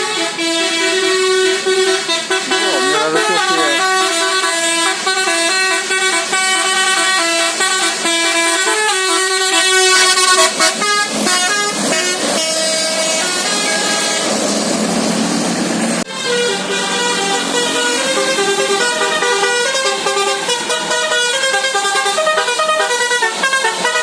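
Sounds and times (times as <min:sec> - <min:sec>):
musical air horn tune: 0:00.0 - 0:14.4, 0:16.1 - 0:24.0
rushing noise: 0:02.3 - 0:04.6.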